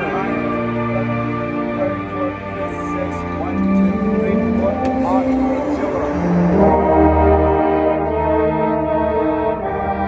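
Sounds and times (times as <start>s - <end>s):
marching band soft held chords: 0.0s - 10.0s.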